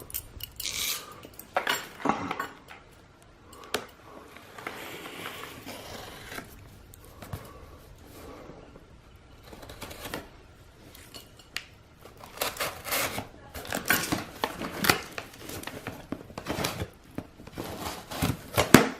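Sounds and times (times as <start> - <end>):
knife slicing packing tape: 12.2 - 13.3.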